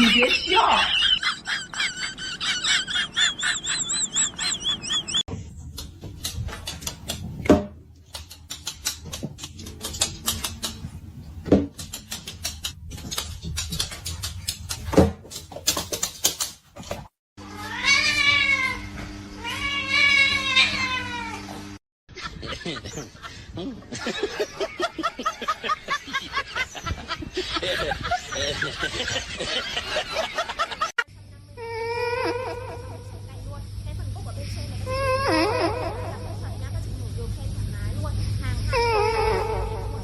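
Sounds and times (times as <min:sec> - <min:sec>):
clicks and taps: 0:05.7 - 0:10.8, 0:11.5 - 0:17.0
cat meowing: 0:19.4 - 0:21.4.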